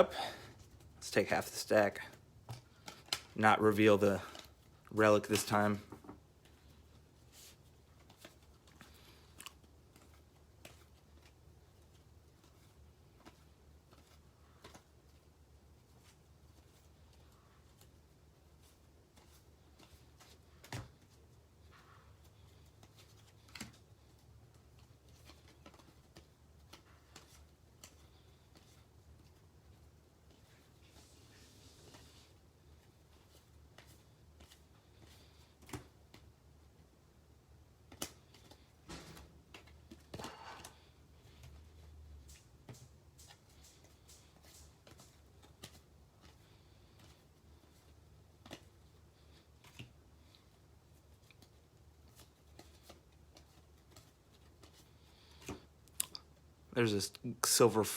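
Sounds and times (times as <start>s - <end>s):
trading cards being flipped: 22.3s - 36.3s, 37.8s - 56.2s.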